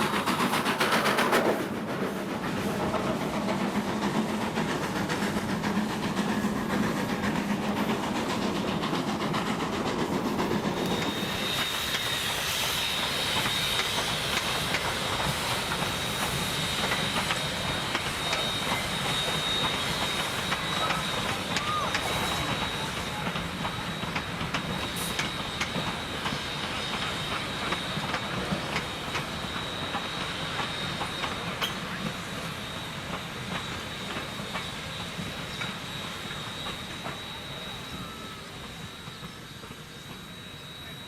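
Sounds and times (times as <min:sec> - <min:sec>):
clatter of train wheels: 0:00.0 - 0:41.0
steam hiss: 0:00.0 - 0:41.0
steam train running: 0:00.0 - 0:41.0
thin steady high tone: 0:35.2 - 0:41.0.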